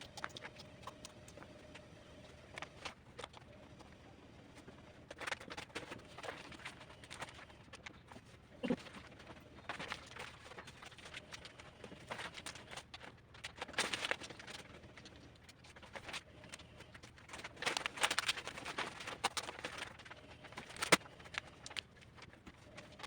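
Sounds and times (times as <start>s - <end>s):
adhesive paper crinkling: 8.8s - 23.0s.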